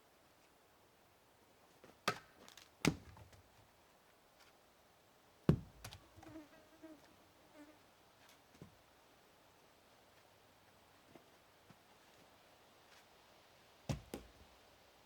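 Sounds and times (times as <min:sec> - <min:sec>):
dull thud: 0:05.5 - 0:06.0, 0:13.9 - 0:14.4
insect buzzing faintly: 0:05.6 - 0:11.4.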